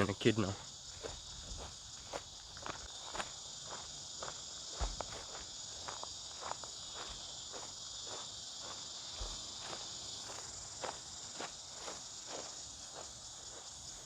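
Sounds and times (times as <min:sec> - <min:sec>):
high-pitched insect chorus: 0:00.0 - 0:14.0
footsteps crunching: 0:00.4 - 0:14.0
soft thuds: 0:04.7 - 0:05.2.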